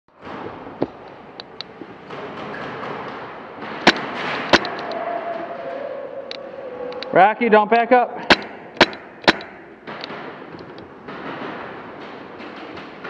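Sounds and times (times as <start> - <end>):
airsoft gun shots: 3.6 - 4.8, 8.2 - 11.9.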